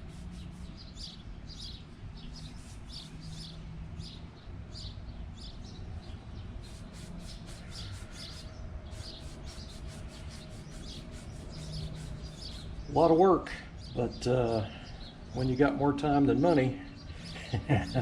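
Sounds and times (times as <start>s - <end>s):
scouring pad scrubbing metal: 6.8s - 12.6s.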